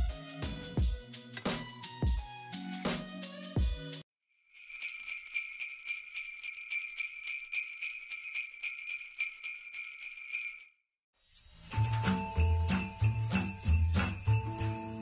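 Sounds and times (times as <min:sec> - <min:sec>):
jingle bells shaken: 0:04.3 - 0:15.0.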